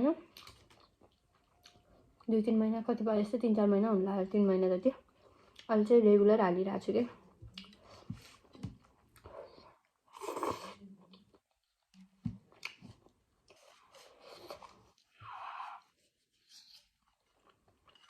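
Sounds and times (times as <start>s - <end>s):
person chewing noodle soup: 0.2s - 2.3s, 7.5s - 15.9s, 16.6s - 18.0s.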